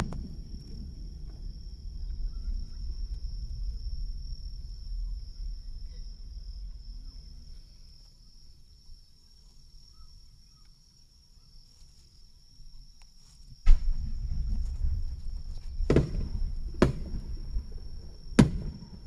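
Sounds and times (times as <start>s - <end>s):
insects trilling: 0.0s - 19.0s
low rumbling noise: 13.7s - 19.0s
sharp loud knock: 15.9s - 17.6s, 18.4s - 19.0s.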